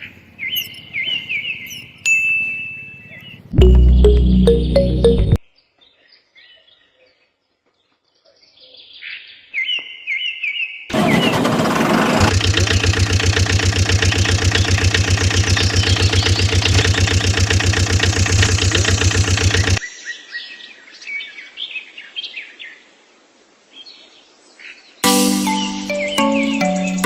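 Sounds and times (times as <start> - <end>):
birds chirping: 0.0 - 7.2, 12.3 - 20.1, 25.0 - 27.0
engine chugging: 10.9 - 19.8.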